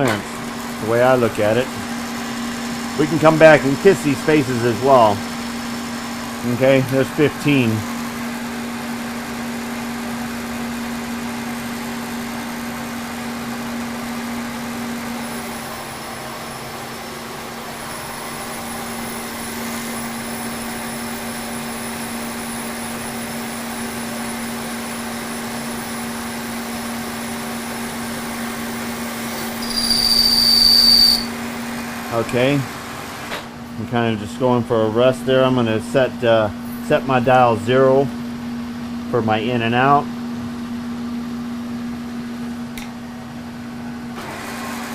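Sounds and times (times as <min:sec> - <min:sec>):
milling machine humming: 0:27.6 - 0:31.4
faint high whine: 0:29.4 - 0:31.4.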